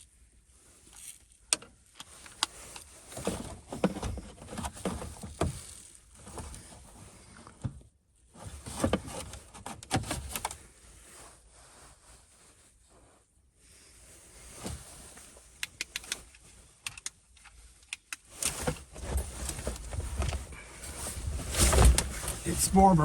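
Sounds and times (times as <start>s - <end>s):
clicks and knocks of handled parts: 15.6s - 20.4s.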